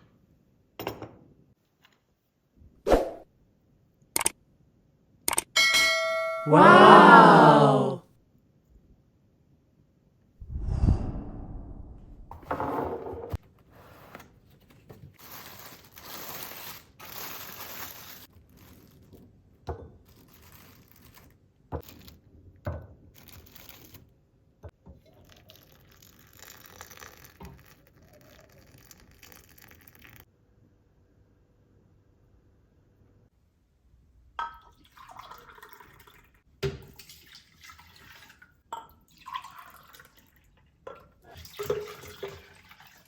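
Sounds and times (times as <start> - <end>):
packaging rustling and crinkling: 14.4 - 19.3, 20.0 - 22.2, 23.2 - 24.0.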